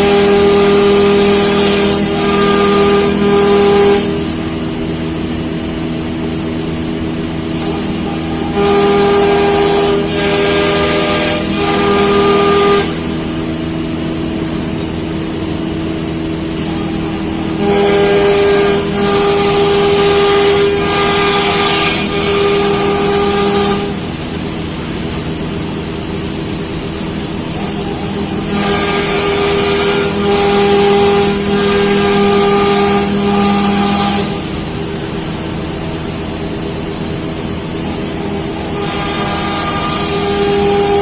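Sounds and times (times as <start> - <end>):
cnc router spindle whine: 0.0 - 41.0
hiss: 0.0 - 41.0.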